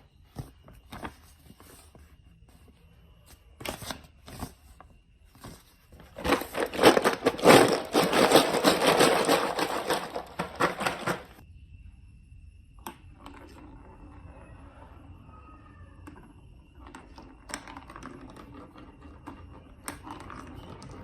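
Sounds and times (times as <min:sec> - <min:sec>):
plastic blocks clattering: 0:05.4 - 0:11.4.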